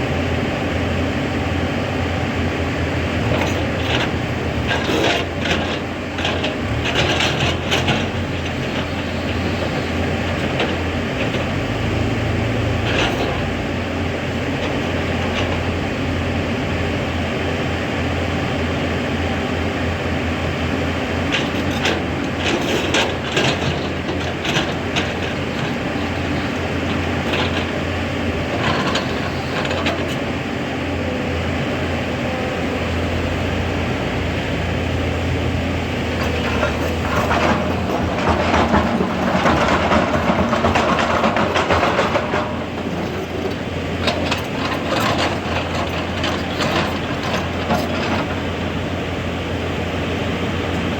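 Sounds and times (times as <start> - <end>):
excavator diesel engine running: 0.0 - 50.9
metallic clanks and knocks: 21.3 - 30.2, 36.2 - 48.8.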